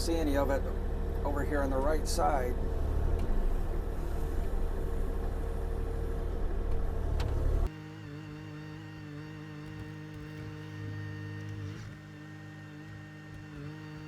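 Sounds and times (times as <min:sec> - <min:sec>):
diesel engine rumbling: 0:00.0 - 0:07.7.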